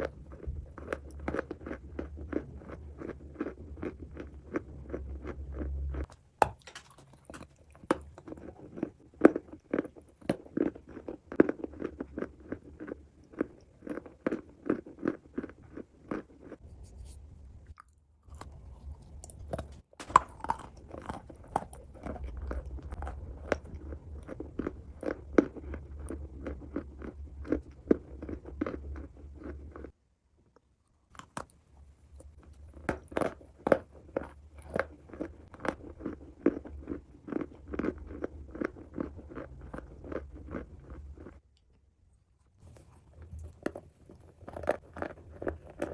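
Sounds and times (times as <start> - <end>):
clay being chewed: 0.0 - 45.9.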